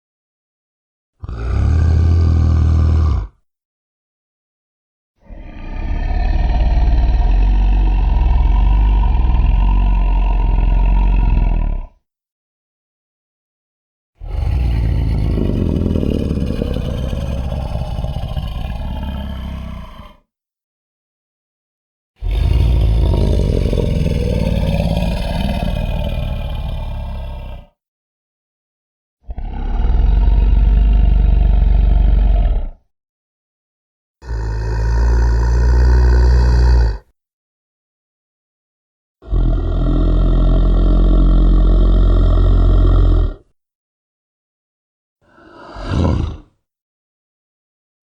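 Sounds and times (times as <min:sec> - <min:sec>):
deep rumbling growl: 0:01.2 - 0:03.3, 0:05.3 - 0:12.0, 0:14.2 - 0:20.2, 0:22.2 - 0:27.7, 0:29.3 - 0:32.8, 0:34.2 - 0:37.0, 0:39.2 - 0:43.4, 0:45.3 - 0:46.5
deep rough dinosaur roar: 0:01.2 - 0:03.4, 0:05.2 - 0:12.0, 0:14.2 - 0:20.3, 0:22.2 - 0:27.8, 0:29.2 - 0:32.8, 0:34.2 - 0:37.1, 0:39.2 - 0:43.5, 0:45.3 - 0:46.6.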